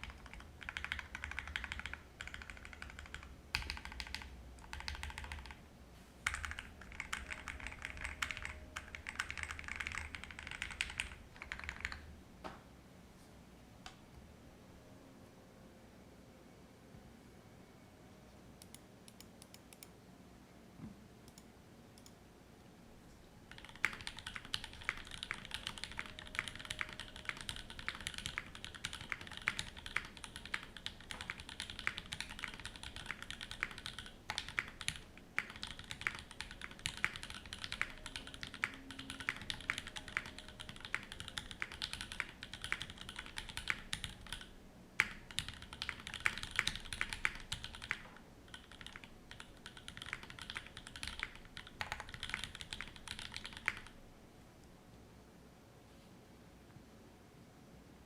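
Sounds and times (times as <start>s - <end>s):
mechanical keyboard typing: 0.0s - 5.6s, 6.2s - 12.1s, 23.5s - 54.0s.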